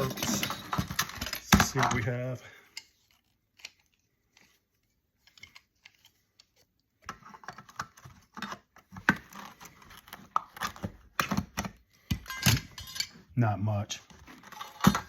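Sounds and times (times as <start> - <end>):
plastic and metal clicks and clatter: 0.0 - 13.2, 14.1 - 15.0.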